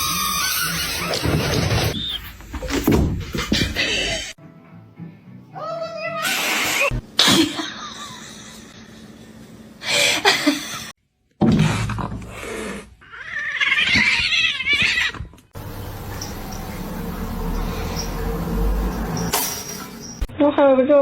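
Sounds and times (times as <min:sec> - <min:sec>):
cats meowing and yowling: 0:13.0 - 0:15.3.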